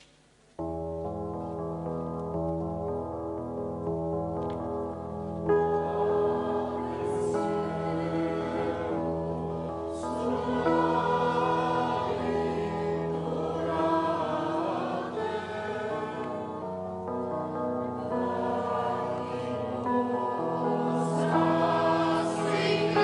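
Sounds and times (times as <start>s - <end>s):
choir singing: 5.6s - 23.0s.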